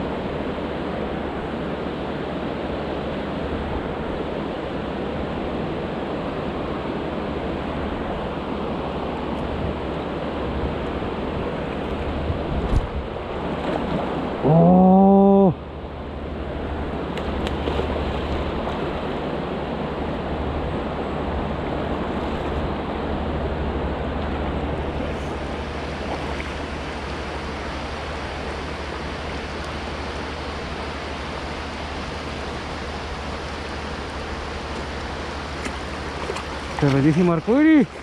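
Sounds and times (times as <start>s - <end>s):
wind rumble on microphone: 0.0s - 14.5s
river water rushing: 0.0s - 38.0s.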